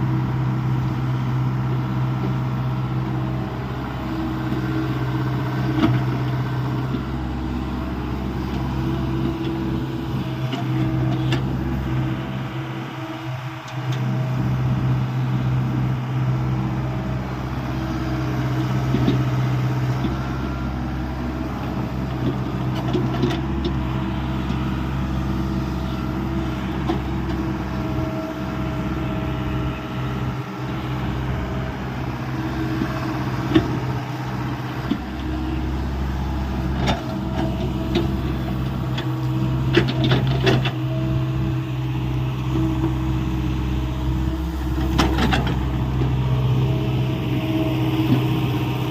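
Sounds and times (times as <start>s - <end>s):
excavator diesel engine running: 0.0s - 48.9s.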